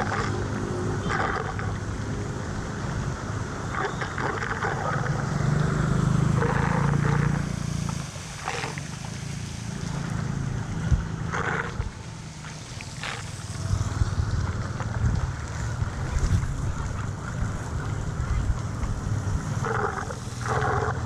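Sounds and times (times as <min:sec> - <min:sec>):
water splashing: 0:00.0 - 0:21.0
low rumble: 0:12.9 - 0:20.2.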